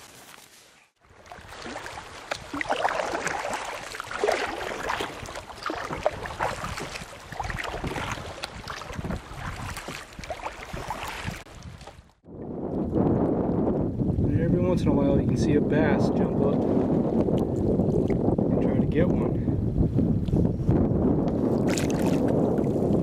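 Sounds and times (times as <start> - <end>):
paddle splashing water: 1.0 - 12.9, 21.5 - 23.0
wind buffeting microphone: 1.0 - 23.0.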